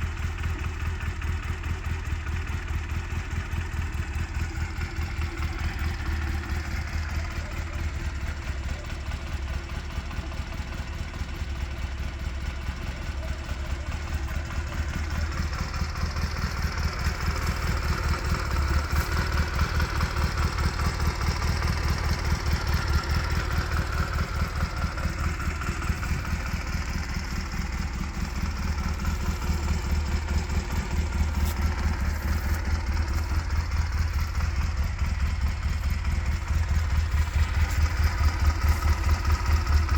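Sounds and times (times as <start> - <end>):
motorcycle engine idling: 0.0 - 39.9.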